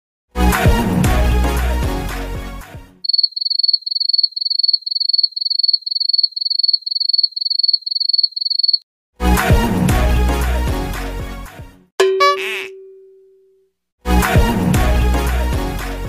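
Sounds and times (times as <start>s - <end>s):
cricket chirping: 3.0s - 8.8s.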